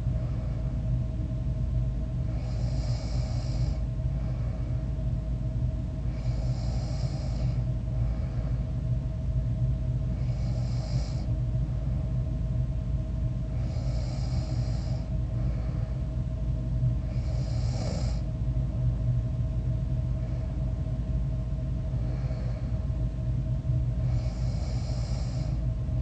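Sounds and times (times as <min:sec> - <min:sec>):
steady low hum: 0:00.0 - 0:26.0
person snoring: 0:02.3 - 0:03.8, 0:06.1 - 0:07.6, 0:10.2 - 0:11.3, 0:13.6 - 0:15.1, 0:17.1 - 0:18.2, 0:24.1 - 0:25.6.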